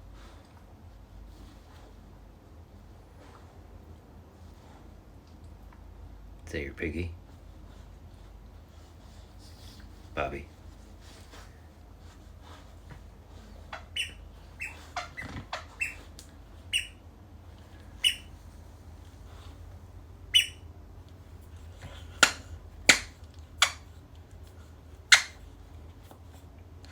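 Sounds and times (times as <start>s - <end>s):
squeaky rubber toy squeaks: 13.9s - 16.1s, 16.7s - 17.0s, 18.0s - 18.3s, 20.3s - 20.6s, 25.1s - 25.4s
loud sharp snaps: 22.1s - 23.8s.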